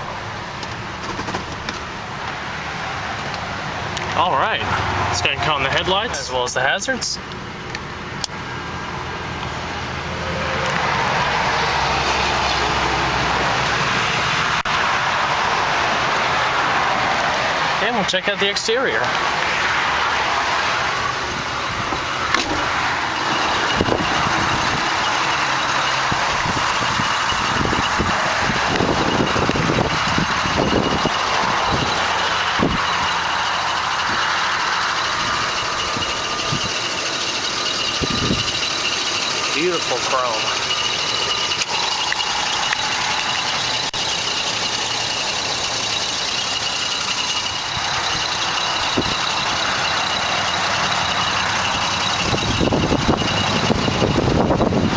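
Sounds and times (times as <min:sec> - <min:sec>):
distant highway traffic: 0:00.0 - 0:54.9
wind buffeting microphone: 0:52.2 - 0:54.9.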